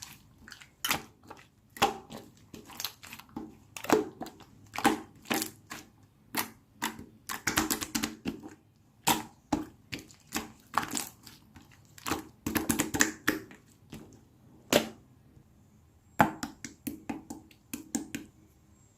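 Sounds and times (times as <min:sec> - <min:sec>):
crunchy slime crackling and popping: 0:00.0 - 0:13.6.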